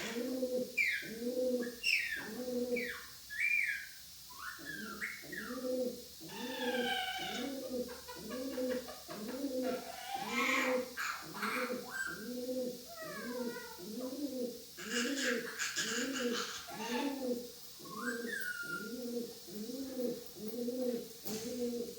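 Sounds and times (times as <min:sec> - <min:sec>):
bird cooing: 0:00.0 - 0:03.8, 0:04.4 - 0:21.9
parrot chirps and whistles: 0:02.8 - 0:05.6, 0:17.8 - 0:18.9.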